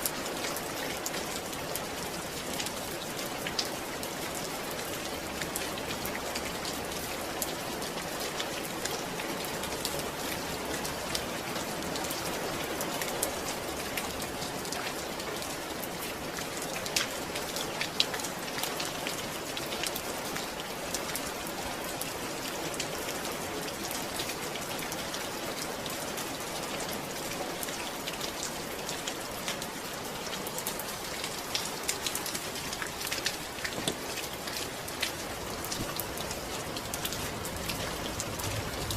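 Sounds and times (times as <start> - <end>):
steady rain falling: 0.0 - 38.9
sharp taps of raindrops: 31.2 - 38.9.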